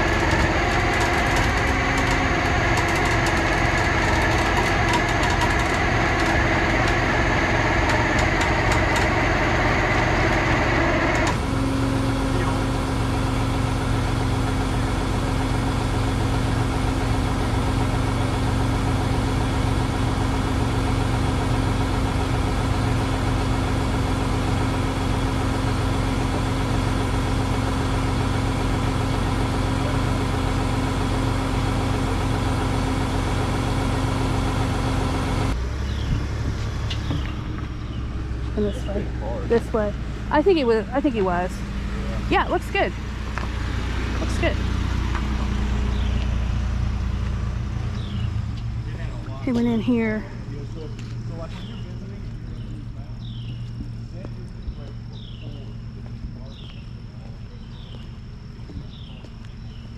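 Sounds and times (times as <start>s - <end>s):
steady hum: 0.0s - 59.9s
vehicle engine running: 0.0s - 59.9s.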